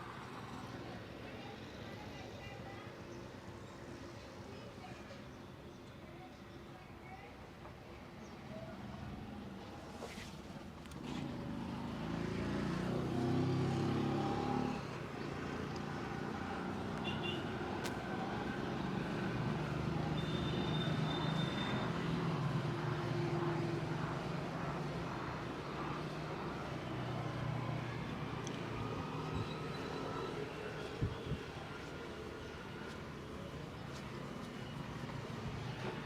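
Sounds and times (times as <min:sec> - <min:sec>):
vehicle engines passing: 0:10.9 - 0:36.0.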